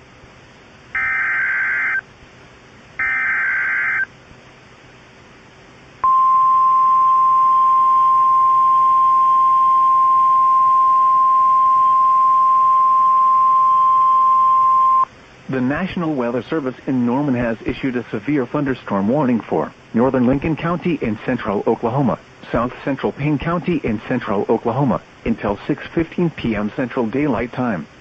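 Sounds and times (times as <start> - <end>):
buzzy data bursts: 0.9 - 2.0, 3.0 - 4.1
steady alarm tone: 0.9 - 2.0, 3.0 - 4.1.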